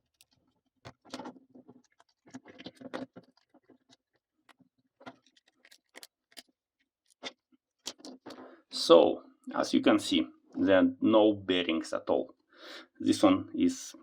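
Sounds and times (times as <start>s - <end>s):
faint small clicks and scrapes: 0.0s - 8.7s.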